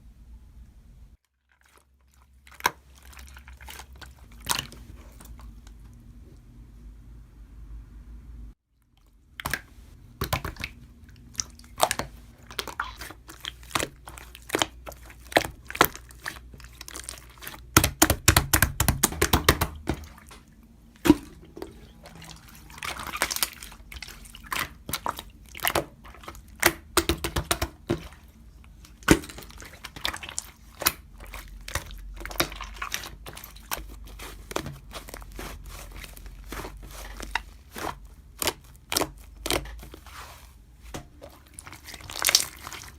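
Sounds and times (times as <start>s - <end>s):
crunching and crackling: 8.9s - 42.9s.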